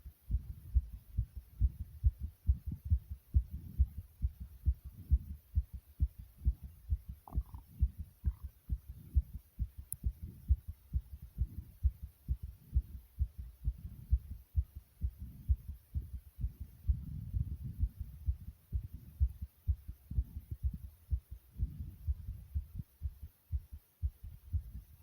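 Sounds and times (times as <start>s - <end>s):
fast heartbeat thumps: 0.0s - 25.0s.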